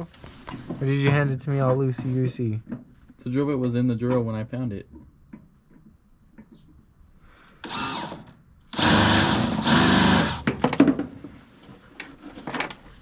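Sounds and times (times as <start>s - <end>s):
power drill motor whine: 7.6s - 10.5s.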